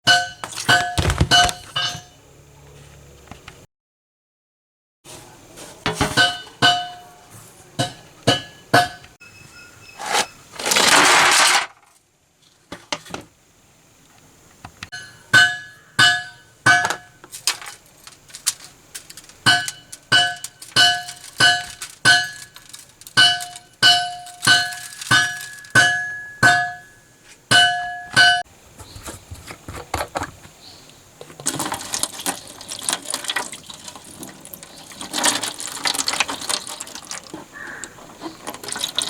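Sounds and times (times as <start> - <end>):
hammer strikes on metal: 6.0 - 7.2, 7.8 - 9.2, 14.9 - 17.2, 19.5 - 22.5, 23.2 - 28.5.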